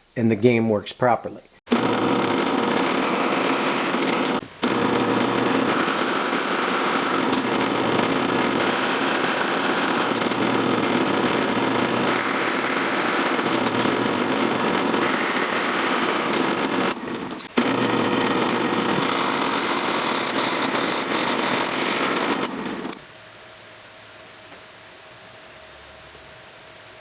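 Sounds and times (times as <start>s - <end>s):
drill press boring through wood: 1.7s - 23.0s.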